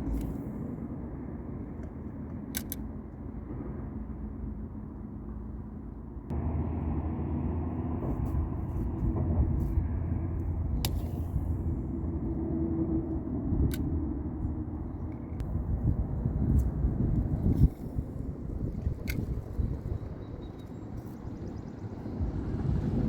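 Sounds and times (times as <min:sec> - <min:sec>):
wind buffeting microphone: 0:06.3 - 0:23.0.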